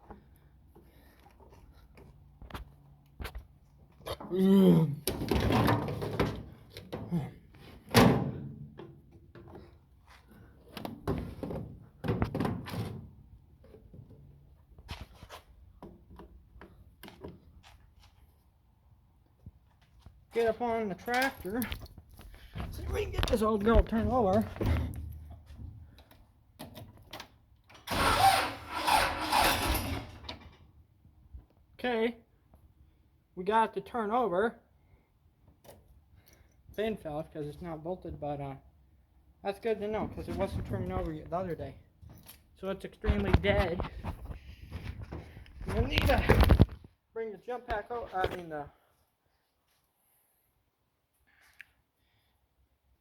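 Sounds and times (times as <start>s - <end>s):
engine starter grinding: 27.8s - 30.6s.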